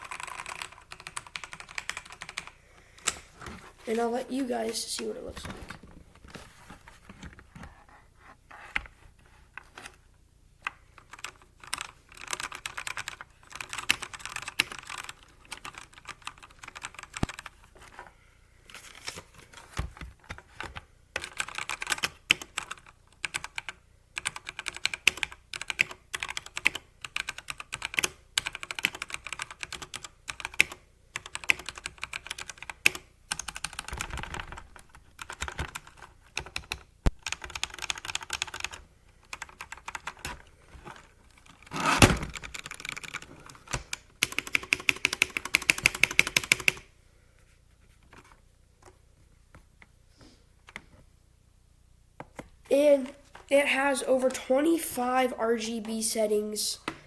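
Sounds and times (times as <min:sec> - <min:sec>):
mechanical keyboard typing: 0:00.0 - 0:02.6, 0:11.0 - 0:17.6, 0:21.2 - 0:40.4, 0:42.3 - 0:46.8.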